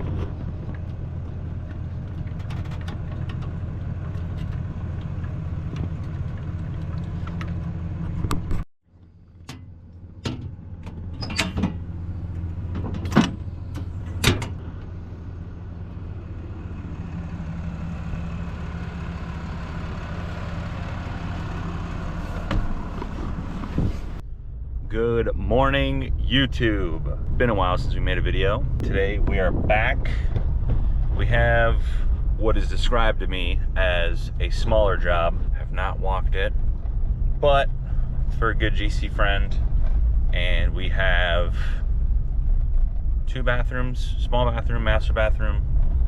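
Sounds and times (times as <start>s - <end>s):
vehicle driving rumble: 0.0s - 46.0s
sharp clicks and knocks: 1.6s - 8.6s.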